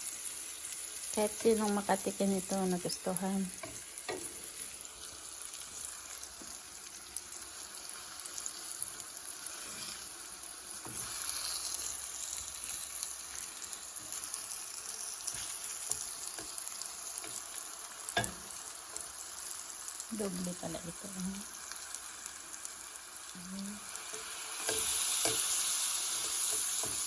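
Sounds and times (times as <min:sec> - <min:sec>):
plantain sizzling in a pan: 0:00.0 - 0:27.0.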